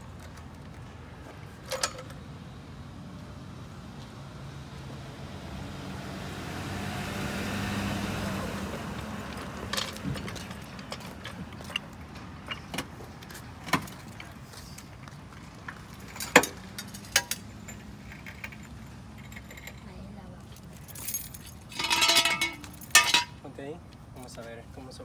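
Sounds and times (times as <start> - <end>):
car passing by: 3.0 - 10.7.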